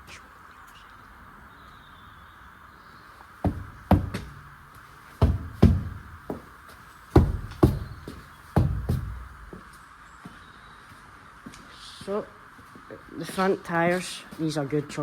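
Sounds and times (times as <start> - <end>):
boot kicking lorry tyre: 3.4 - 9.6.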